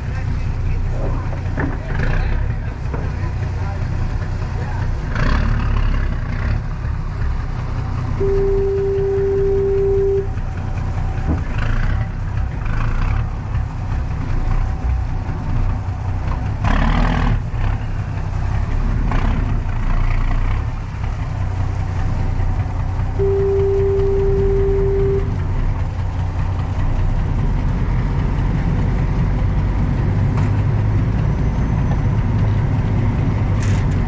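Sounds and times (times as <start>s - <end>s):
low motor rumble: 0.0s - 34.0s
wind: 0.0s - 34.0s
water noise: 7.5s - 11.6s, 20.7s - 29.2s
clean steady tone: 8.2s - 10.4s, 23.2s - 25.4s.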